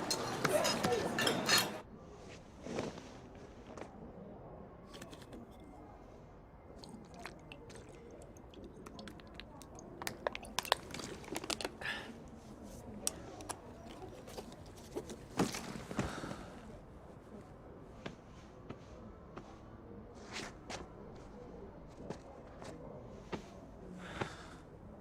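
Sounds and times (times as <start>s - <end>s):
dishes and utensils clinking: 0.0s - 1.8s
background hubbub: 0.0s - 25.0s.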